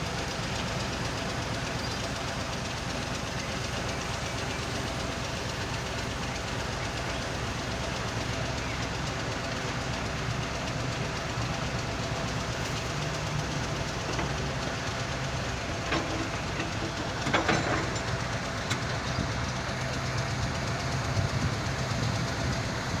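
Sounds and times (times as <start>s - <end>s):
diesel engine rumble: 0.0s - 23.0s
sharp clattering knocks: 13.4s - 19.2s.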